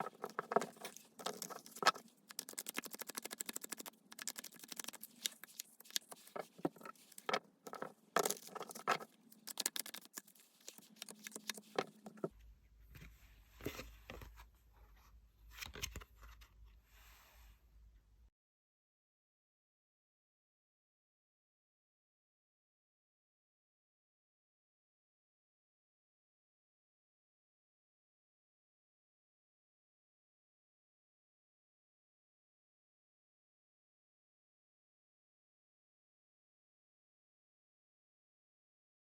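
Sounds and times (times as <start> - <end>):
cards being shuffled: 0.0 - 12.3.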